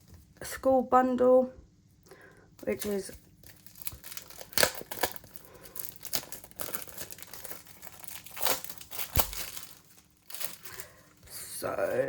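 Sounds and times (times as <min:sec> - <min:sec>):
paper crinkling and rustling: 0:02.6 - 0:12.0.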